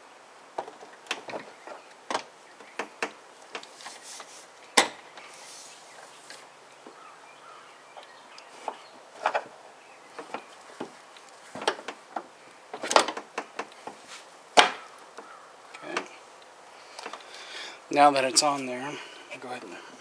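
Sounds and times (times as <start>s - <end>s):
gas strut clicks and knocks: 0.6s - 3.7s, 4.8s - 5.3s, 10.2s - 14.0s.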